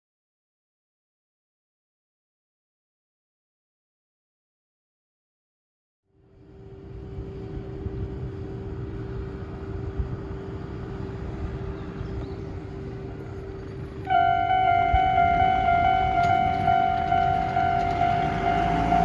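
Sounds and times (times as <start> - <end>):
outdoor background rumble: 6.1 - 19.0
faint hum: 6.2 - 19.0
level crossing warning bell: 13.2 - 19.0.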